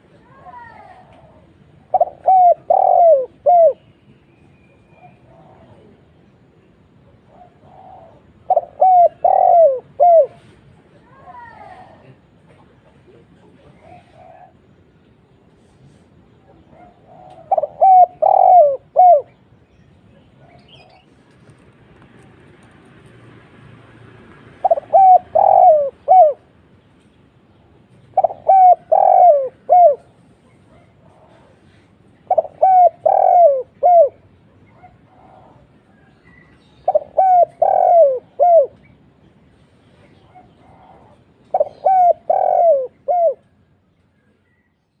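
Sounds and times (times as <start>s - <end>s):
dove cooing: 0.0s - 3.9s, 4.9s - 6.0s, 7.1s - 10.6s, 13.2s - 14.7s, 16.5s - 19.4s, 24.6s - 26.6s, 28.0s - 38.9s, 40.0s - 43.6s.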